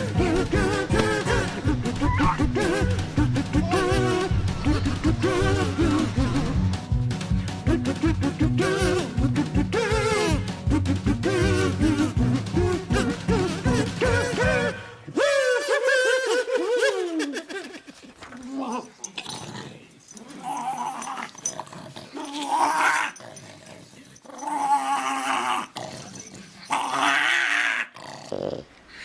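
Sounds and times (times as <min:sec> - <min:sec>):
dog growling and whining: 0:18.4 - 0:28.7.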